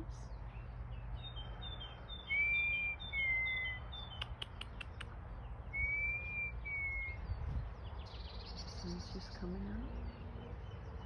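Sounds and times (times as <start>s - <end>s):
faint birdsong chirps: 0.0s - 11.0s
sharp clicks: 4.2s - 5.2s.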